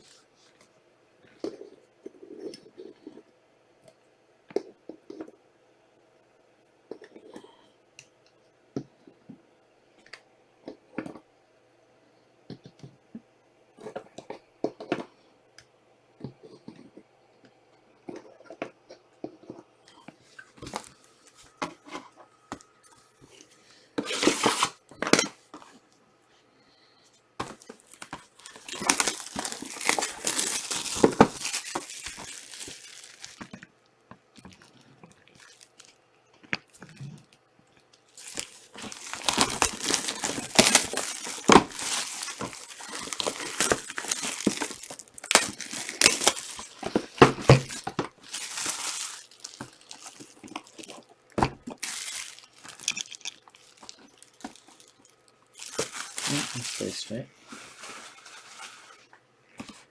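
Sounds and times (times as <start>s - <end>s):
foil wrappers crinkling: 20.3s - 24.8s, 27.4s - 33.7s, 34.4s - 36.0s, 38.1s - 59.1s
card packs ripping open: 20.6s - 21.5s, 24.0s - 24.8s, 27.4s - 33.6s, 38.1s - 57.2s.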